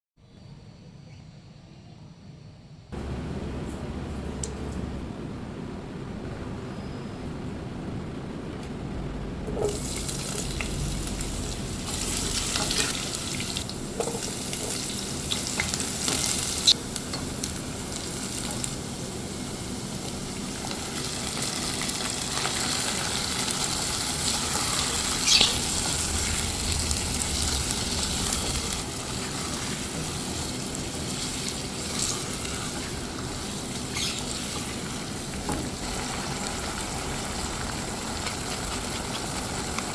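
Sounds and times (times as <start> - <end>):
food sizzling in hot oil: 9.6 - 39.9.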